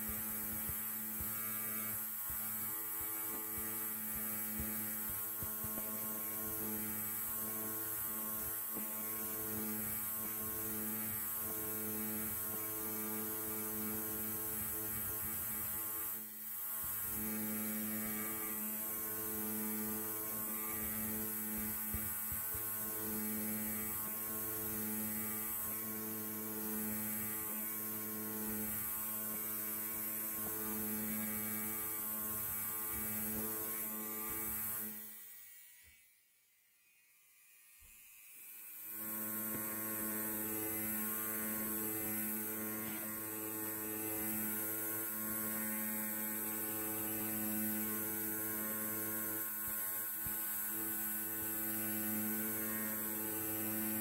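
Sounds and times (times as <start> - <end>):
electric hair clipper buzzing: 0.0 - 54.0.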